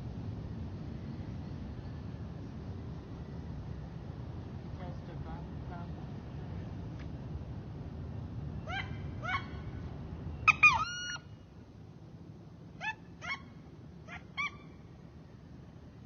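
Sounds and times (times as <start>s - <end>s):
ducks squealing calls: 10.5s - 11.2s.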